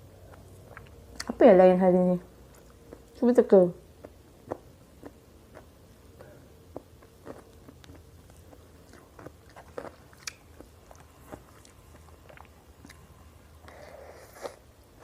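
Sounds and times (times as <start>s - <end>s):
person chewing with mouth clicks: 0.2s - 1.4s, 4.0s - 14.6s.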